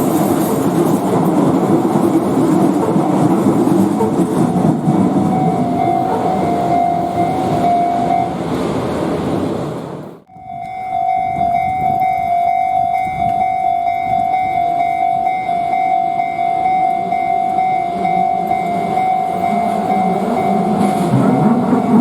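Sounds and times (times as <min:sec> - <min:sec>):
electric train rumbling past: 0:00.0 - 0:22.0
level crossing bell ringing: 0:04.6 - 0:08.4, 0:10.3 - 0:22.0.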